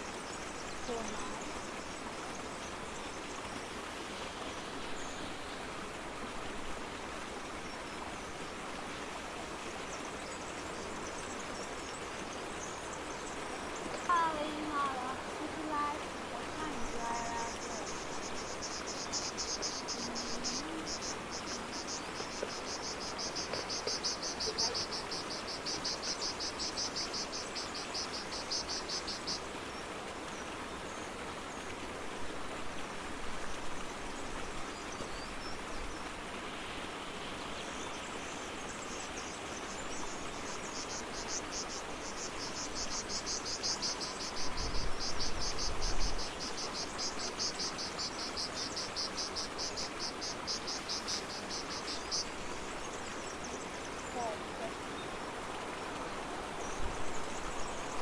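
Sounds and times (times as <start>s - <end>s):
insects chirping: 9.9s - 29.8s, 36.1s - 54.3s.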